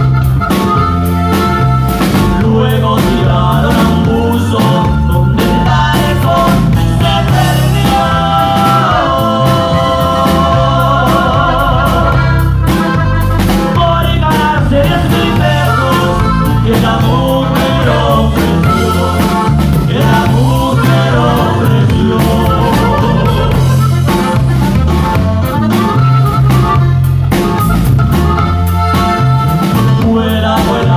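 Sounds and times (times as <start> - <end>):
song with wavering vocals and band: 0.0 - 30.9.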